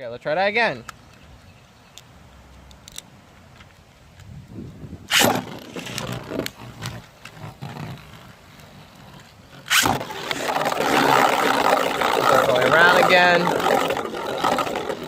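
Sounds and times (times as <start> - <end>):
spinning top launcher ripping: 5.1 - 8.3, 9.6 - 15.0
spinning tops whirring and scraping: 5.1 - 15.0.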